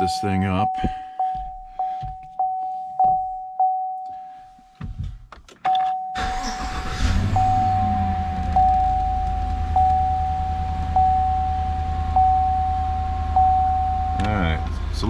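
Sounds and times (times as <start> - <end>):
car warning chime dinging: 0.0 - 4.3, 5.7 - 15.0
car engine cranking and starting: 6.2 - 15.0.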